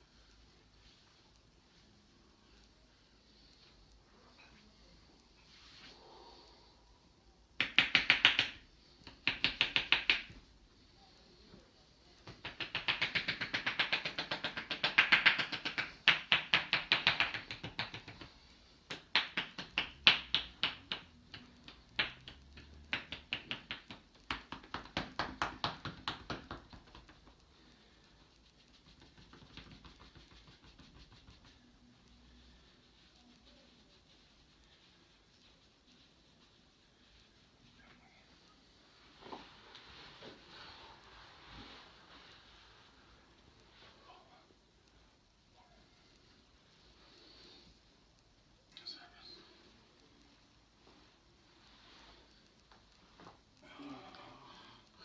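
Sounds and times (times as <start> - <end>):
hands slapping body: 7.6 - 10.5, 12.2 - 27.6, 28.7 - 31.6.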